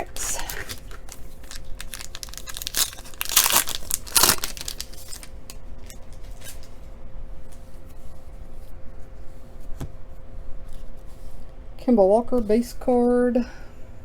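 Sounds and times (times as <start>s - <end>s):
wrapper tearing and crinkling: 0.0s - 6.7s
cards rustling: 0.0s - 6.8s.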